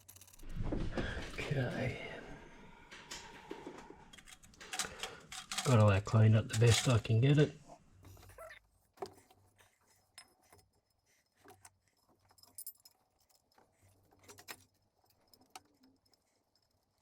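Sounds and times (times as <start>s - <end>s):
small metal parts clinking: 4.1s - 7.1s.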